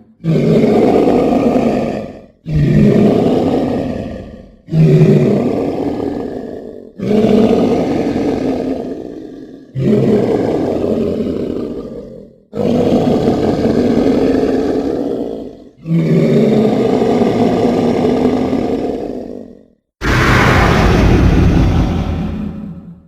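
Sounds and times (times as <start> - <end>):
deep throaty dinosaur roar: 0.0 - 23.0.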